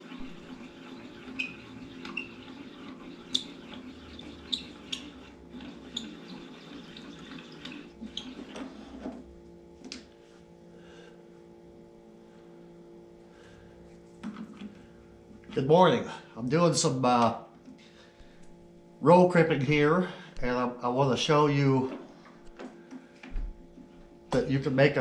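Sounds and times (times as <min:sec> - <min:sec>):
steady low hum: 0:00.0 - 0:25.0.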